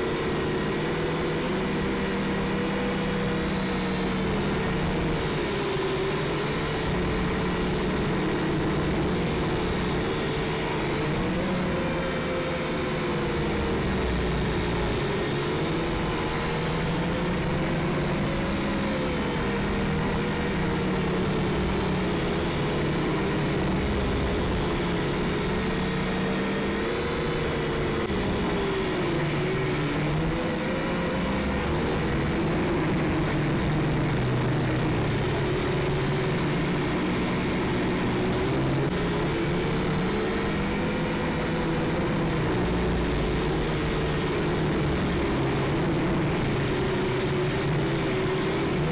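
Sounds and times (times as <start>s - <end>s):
drone propellers buzzing: 0.0s - 48.9s.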